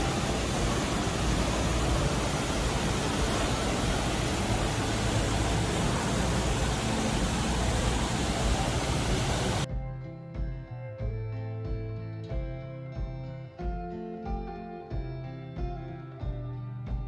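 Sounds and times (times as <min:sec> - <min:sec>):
steady rushing noise: 0:00.0 - 0:09.7.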